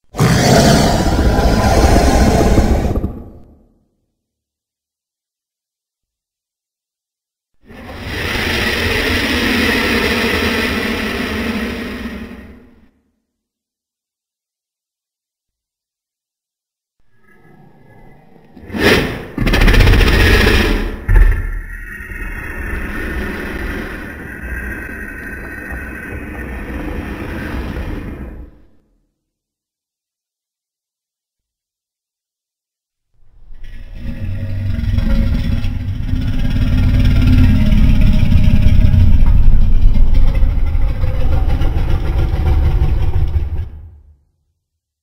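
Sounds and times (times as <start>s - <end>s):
low rumbling dragon growl: 0.0s - 3.7s, 7.6s - 12.9s, 17.1s - 28.8s, 33.4s - 44.1s.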